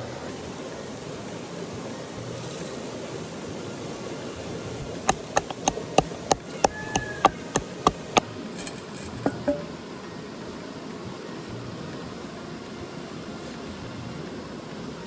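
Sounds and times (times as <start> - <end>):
flowing river water: 0.0 - 15.0
sharp ringing knocks: 5.1 - 8.2.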